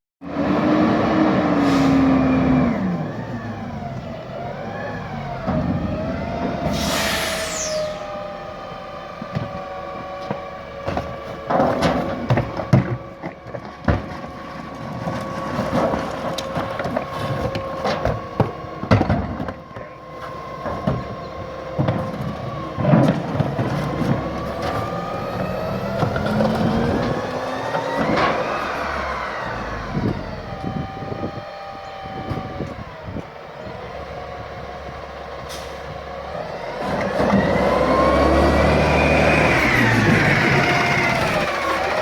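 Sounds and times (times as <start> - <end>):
garbage truck engine revving: 0.2 - 13.6, 14.2 - 42.0
hydraulic whine: 1.0 - 10.4, 22.2 - 34.1, 35.5 - 42.0
air hiss: 6.7 - 8.1.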